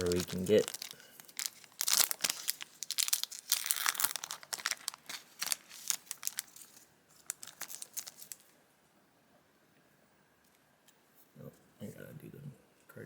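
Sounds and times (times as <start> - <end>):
foil wrapper crinkling: 0.0 - 8.5.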